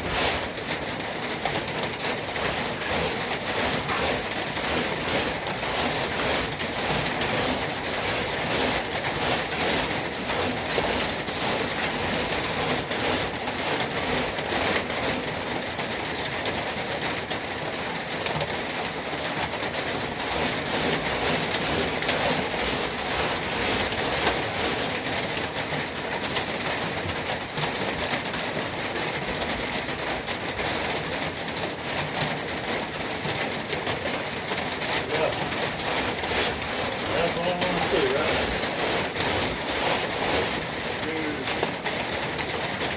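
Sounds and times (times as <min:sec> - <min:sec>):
sandpaper sanding metal: 0:00.0 - 0:00.8, 0:02.1 - 0:15.4, 0:20.1 - 0:25.6, 0:35.0 - 0:41.6.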